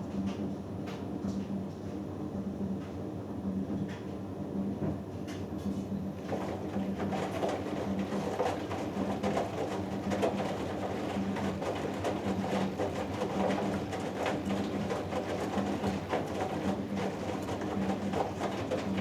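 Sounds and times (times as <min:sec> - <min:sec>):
washing machine motor hum: 0:06.0 - 0:19.0.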